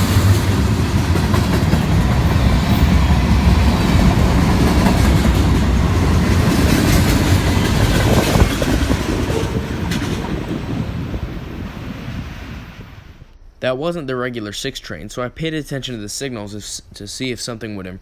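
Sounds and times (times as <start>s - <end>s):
freight train cars rolling: 0.0s - 13.2s.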